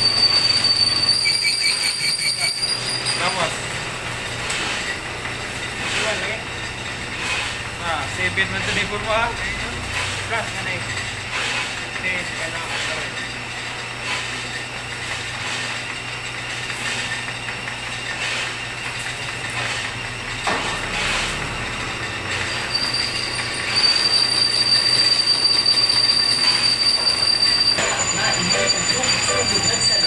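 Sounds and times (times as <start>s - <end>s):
high-pitched metallic squeal: 0.0s - 13.2s, 19.6s - 30.0s
machine tool cutting steel: 0.0s - 14.4s, 19.3s - 30.0s.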